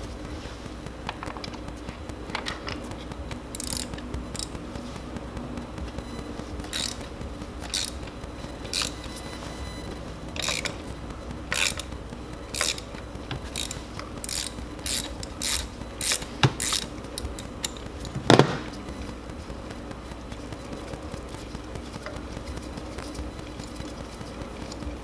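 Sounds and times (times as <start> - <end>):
hand ratchet clicking: 1.1 - 9.2, 10.3 - 10.9, 11.5 - 18.4, 21.9 - 24.9.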